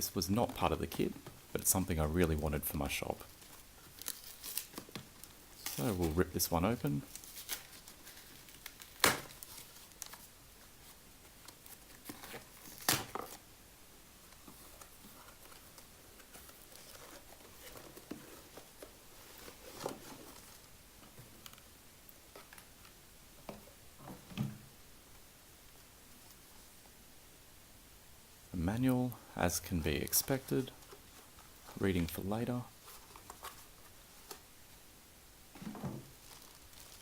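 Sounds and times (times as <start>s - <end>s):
packaging rustling and crinkling: 0.2s - 13.4s, 14.2s - 21.7s, 30.2s - 34.5s, 35.5s - 37.0s.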